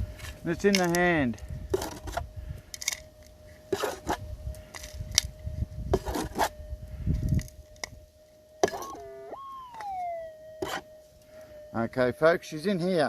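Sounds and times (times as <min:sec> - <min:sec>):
metal detector target signal: 0:08.6 - 0:13.0
metal detector threshold tone: 0:08.6 - 0:13.0.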